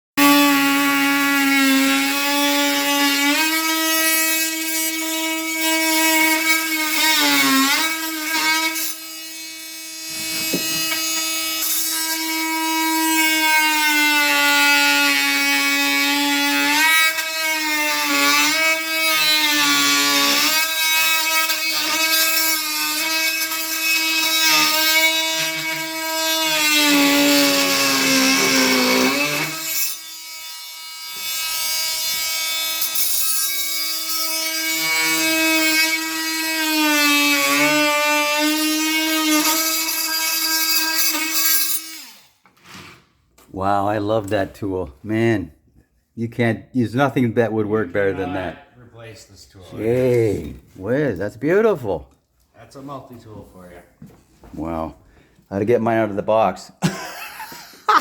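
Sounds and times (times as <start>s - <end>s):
oscillating multi-tool cutting wood: 0.2s - 42.8s.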